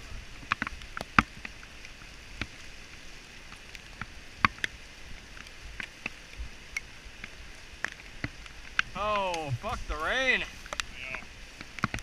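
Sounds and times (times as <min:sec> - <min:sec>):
steady hiss of rain: 0:00.0 - 0:12.0
raindrops tapping on gear: 0:03.5 - 0:12.0.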